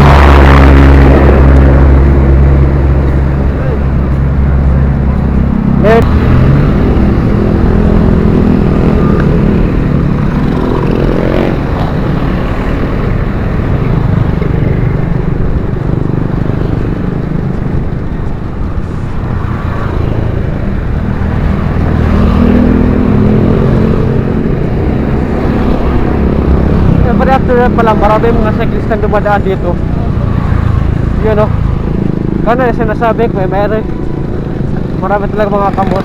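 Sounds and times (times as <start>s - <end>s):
engine rising in pitch: 0.0s - 13.0s
steady traffic rumble: 0.0s - 36.0s
vehicles passing: 0.0s - 36.0s.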